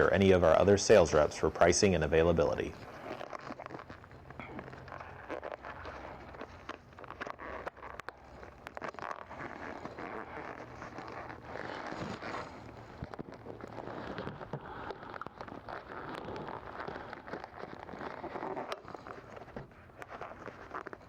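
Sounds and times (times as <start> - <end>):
leather seat cover rustling: 3.0 - 14.6.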